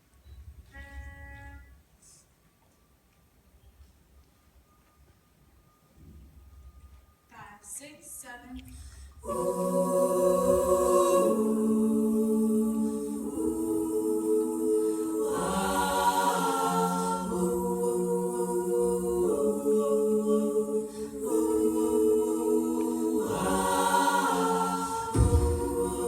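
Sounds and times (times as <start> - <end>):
women singing a cappella chords: 9.1 - 26.0
higher voices over harmony: 9.2 - 26.0.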